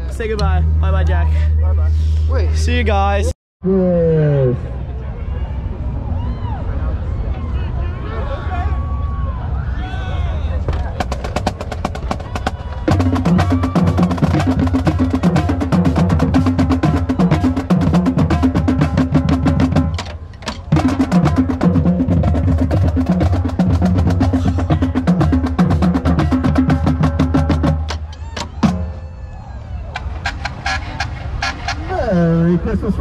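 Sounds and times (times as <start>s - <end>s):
low pitched drums: 0.0s - 4.8s, 10.6s - 29.2s
snare drum strokes: 30.0s - 31.8s.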